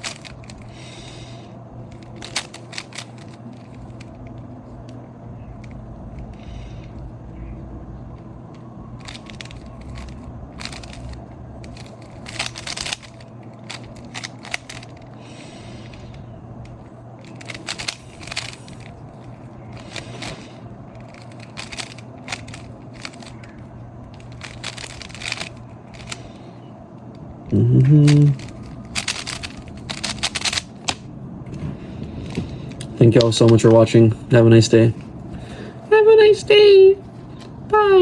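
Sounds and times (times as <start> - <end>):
steady low hum: 0.0 - 38.0
plastic puzzle cube clicking: 11.7 - 13.2, 21.0 - 23.3, 24.2 - 26.2, 28.1 - 31.0.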